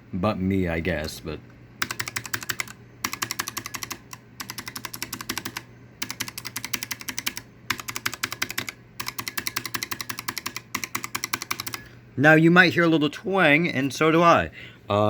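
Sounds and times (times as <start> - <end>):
fast clicky keyboard typing: 1.8 - 11.9.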